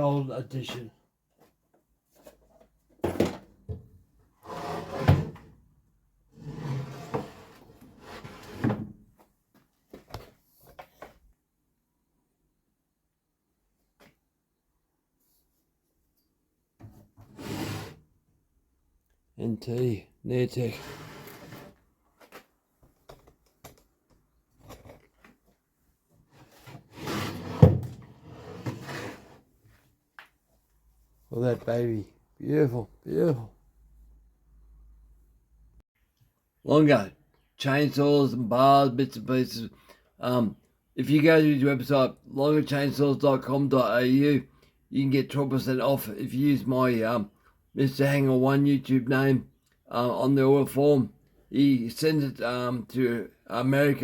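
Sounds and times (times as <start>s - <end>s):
scraping or sliding: 4.4s - 5.4s, 6.4s - 8.8s, 17.3s - 18.0s, 20.7s - 21.8s, 26.4s - 29.4s.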